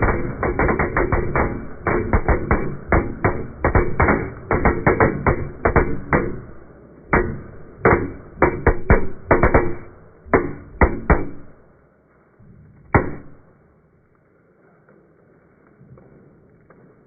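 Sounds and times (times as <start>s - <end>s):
sharp knocks: 0.0s - 11.7s, 12.9s - 13.5s.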